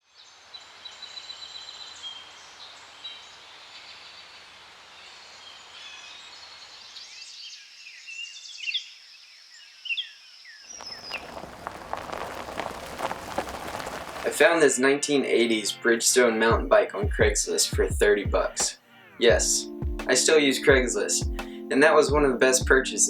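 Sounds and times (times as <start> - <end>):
faint outdoor hiss: 0.1 - 8.4, 9.1 - 23.0
broad rushing noise: 10.8 - 14.6.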